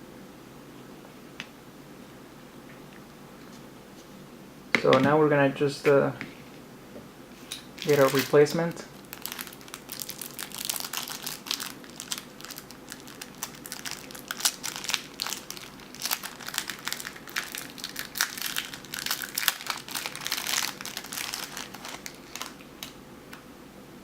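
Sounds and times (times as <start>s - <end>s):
plastic wrapping crinkling: 7.4s - 23.0s.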